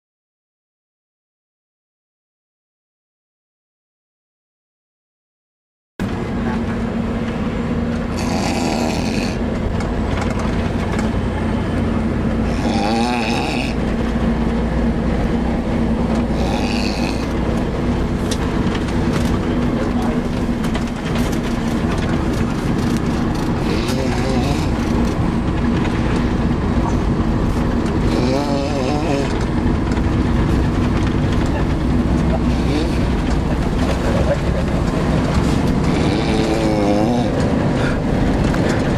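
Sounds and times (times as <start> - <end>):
bus engine drone: 6.0 - 38.9
child snoring: 8.0 - 9.5, 12.4 - 13.9, 16.2 - 17.5, 23.6 - 25.1, 28.0 - 29.4, 32.4 - 33.2, 35.8 - 38.0.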